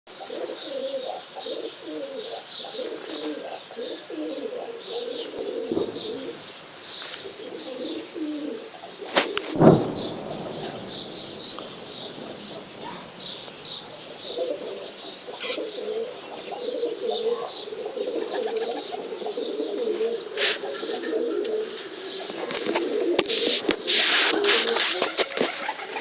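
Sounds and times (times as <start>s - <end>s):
pigeons cooing: 0.2s - 9.8s, 13.2s - 26.0s
loud rustling bursts: 9.2s - 15.1s.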